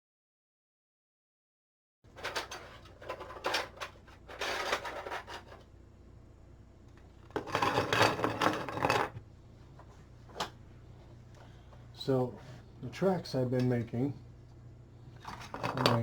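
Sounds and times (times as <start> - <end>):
low steady hum: 2.1 - 16.0.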